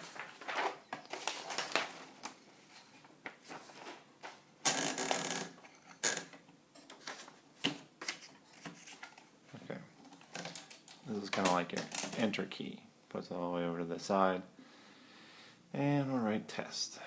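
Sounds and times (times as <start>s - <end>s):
paper rustling and sliding: 0.0s - 4.4s, 7.0s - 9.2s.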